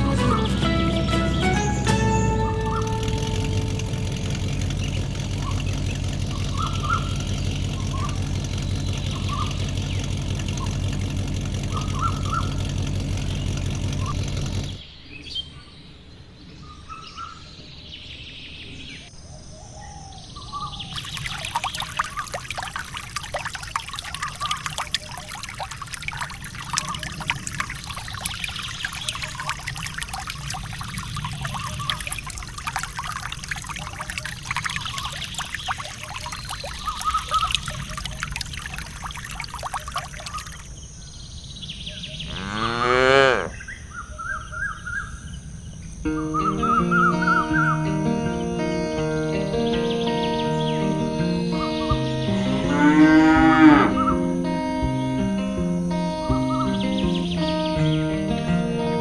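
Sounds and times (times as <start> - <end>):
background music: 0.0 - 4.6, 46.1 - 59.0
bird chirps: 0.0 - 10.7, 26.6 - 42.4
water pouring and splashing: 0.0 - 14.8, 20.9 - 40.8.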